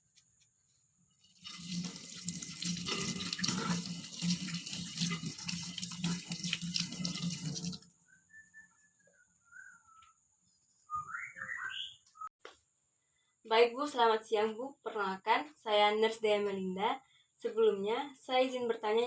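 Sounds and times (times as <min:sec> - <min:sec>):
hands rinsing under water: 0:01.4 - 0:07.9
tap water running into sink: 0:01.4 - 0:07.9.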